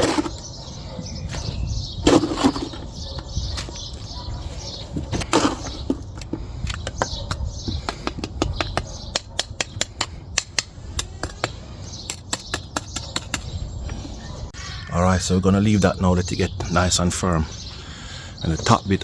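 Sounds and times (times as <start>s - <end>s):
small birds chirping: 0.0s - 19.0s
tool tapping stones in wet cement: 5.2s - 13.5s.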